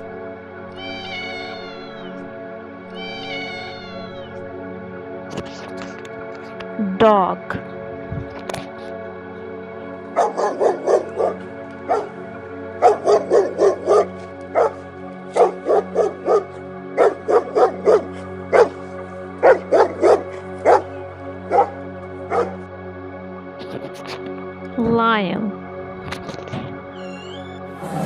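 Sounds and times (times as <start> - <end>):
background music: 0.0 - 28.0
dog barking: 10.2 - 12.2, 12.8 - 18.8, 19.4 - 22.6.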